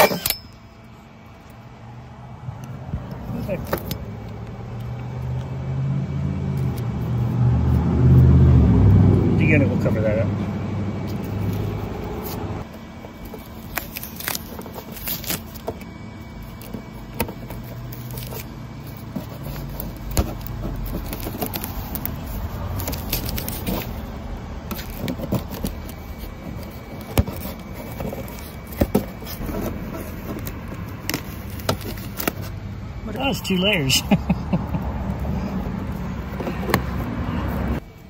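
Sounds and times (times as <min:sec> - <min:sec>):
tools and parts clattering: 0:00.0 - 0:00.8.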